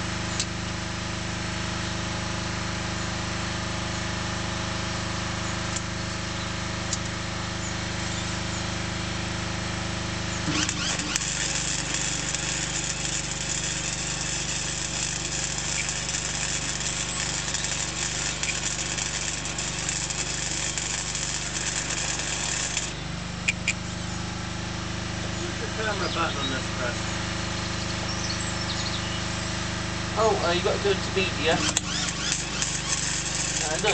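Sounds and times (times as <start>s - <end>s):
engine running steadily: 0.0s - 33.9s
welding crackle and hiss: 10.2s - 23.9s, 30.3s - 33.9s.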